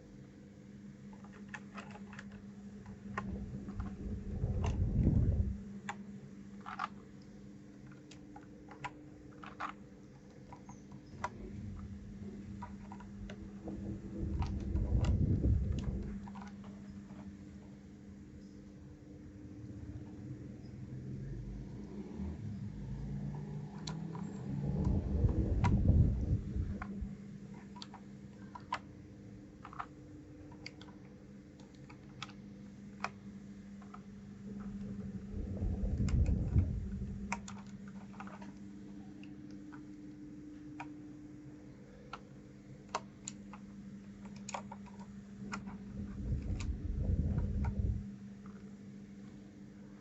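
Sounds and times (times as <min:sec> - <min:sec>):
steady low hum: 0:00.0 - 0:50.0
low handling rumbles: 0:03.2 - 0:05.6, 0:11.1 - 0:16.7, 0:24.4 - 0:27.2, 0:34.4 - 0:37.4, 0:45.7 - 0:48.1.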